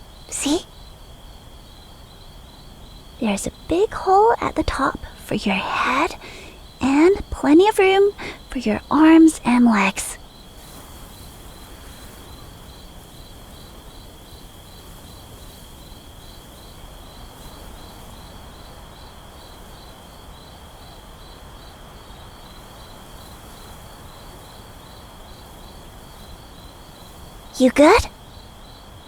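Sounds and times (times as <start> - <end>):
cricket chirping: 0.0 - 29.0
cricket steady high trill: 0.0 - 29.0
faint hiss: 0.0 - 29.0.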